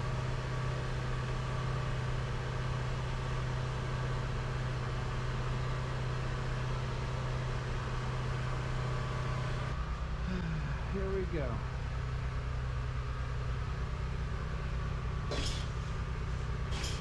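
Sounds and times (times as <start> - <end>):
wheel balancer motor hum: 13.4 - 17.0.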